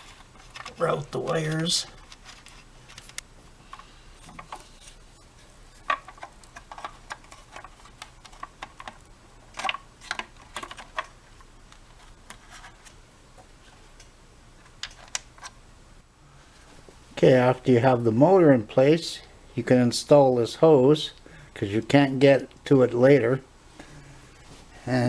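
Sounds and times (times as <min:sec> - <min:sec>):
plastic parts clicking: 0:00.0 - 0:04.7, 0:05.8 - 0:13.0, 0:14.7 - 0:15.6.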